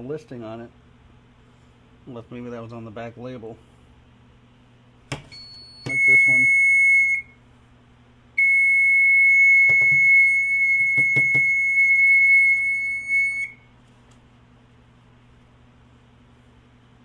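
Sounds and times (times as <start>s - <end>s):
smoke alarm high-pitched tone: 5.3s - 7.4s, 8.4s - 13.7s.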